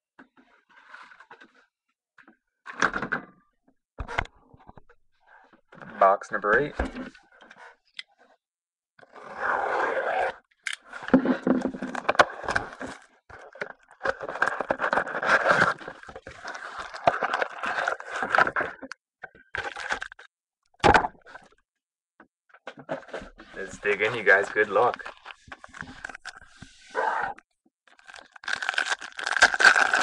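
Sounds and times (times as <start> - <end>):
plastic wrapper crinkling and tearing: 11.9 - 18.6, 19.5 - 20.2, 23.8 - 26.6, 27.9 - 30.0.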